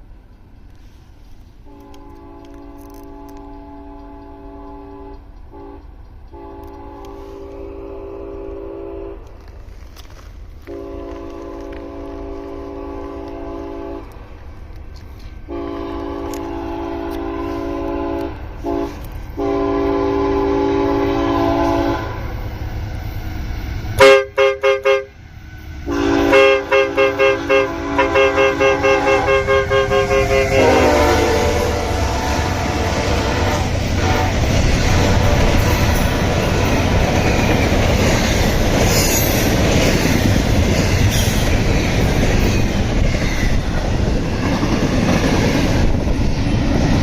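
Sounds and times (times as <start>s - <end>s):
locomotive air horn blasts: 1.6s - 9.4s, 10.6s - 14.2s, 15.5s - 22.4s, 24.0s - 25.2s, 25.8s - 36.7s
pulsing loud horn blasts: 1.7s - 9.3s, 10.7s - 14.2s, 15.5s - 22.4s, 24.0s - 25.2s, 25.8s - 36.4s.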